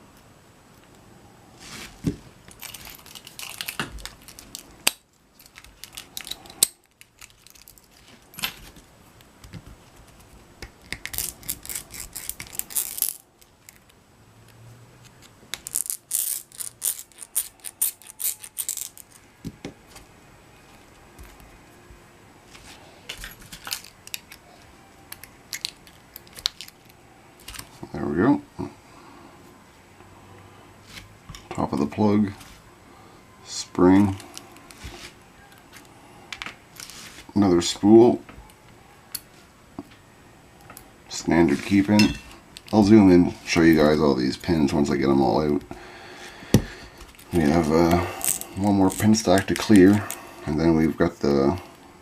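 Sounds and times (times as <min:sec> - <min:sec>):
tools clicking on a metal padlock: 0:10.8 - 0:13.9, 0:15.1 - 0:19.2.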